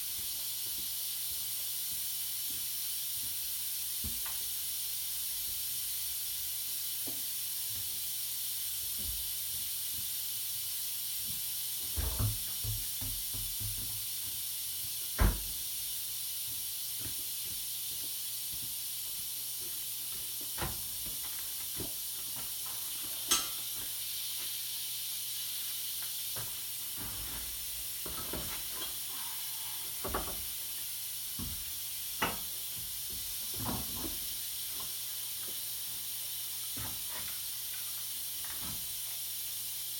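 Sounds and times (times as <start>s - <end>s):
steady hiss: 0.0s - 39.9s.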